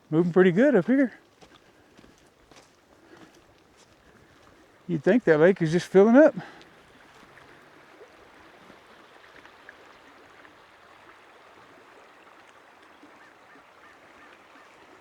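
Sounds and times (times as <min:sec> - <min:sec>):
faint running creek water: 0:00.0 - 0:15.0.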